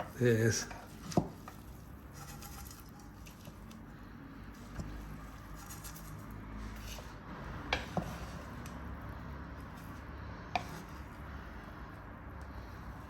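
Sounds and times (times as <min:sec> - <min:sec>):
spoon mixing rice in pot: 0:00.0 - 0:03.8, 0:04.5 - 0:08.8, 0:09.6 - 0:11.4.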